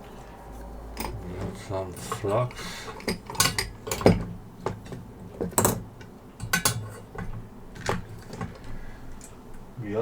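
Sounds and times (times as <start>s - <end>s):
tools clicking and clinking: 1.0s - 8.8s.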